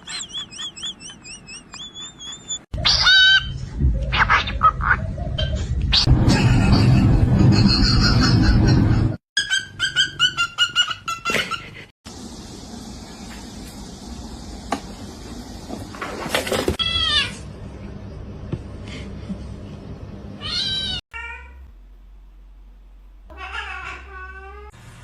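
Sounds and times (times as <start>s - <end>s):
cat meowing: 23.3s - 24.7s.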